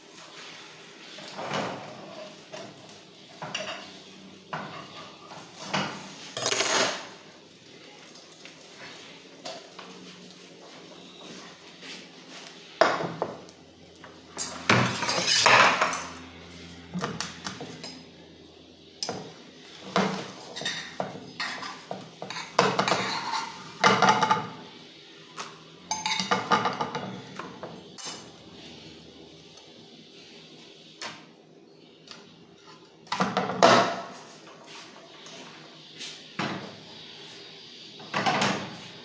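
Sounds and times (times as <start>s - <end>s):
metal utensil scraping metal pan: 20.5s - 23.6s.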